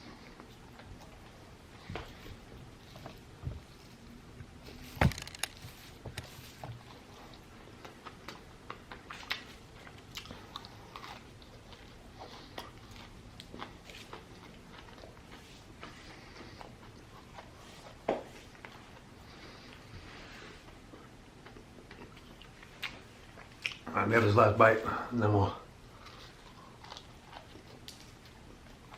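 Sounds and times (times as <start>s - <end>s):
chewing and crunching food: 0.0s - 23.9s, 25.8s - 28.9s.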